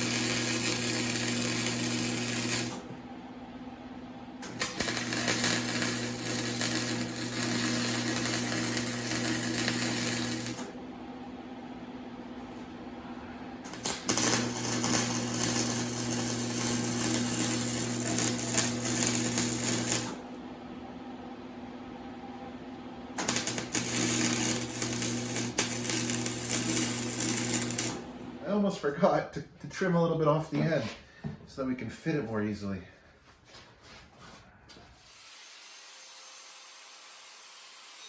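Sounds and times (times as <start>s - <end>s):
arc welding crackling buzz: 0.0s - 3.0s, 4.4s - 10.8s, 13.6s - 20.4s, 23.2s - 28.3s
steady hum: 0.0s - 32.3s.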